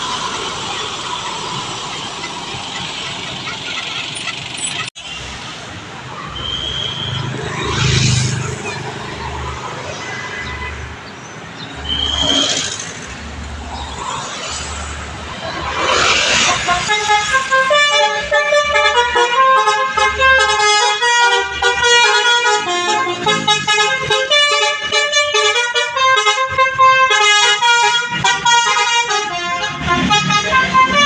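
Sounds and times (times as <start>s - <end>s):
bus horn melody: 16.5s - 31.0s.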